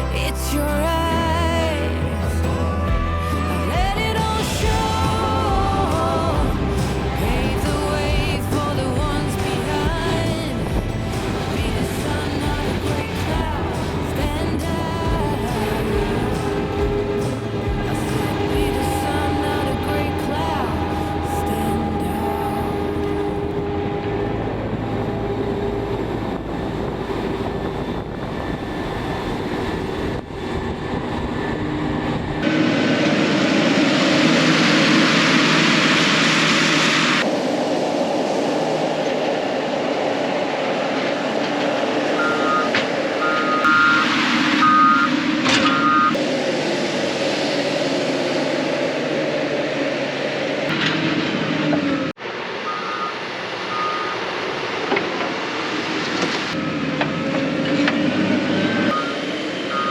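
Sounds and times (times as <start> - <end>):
harvesting machinery running: 0.0 - 59.9
reversing alarm beeps: 42.1 - 46.2, 52.6 - 54.4, 58.9 - 59.9.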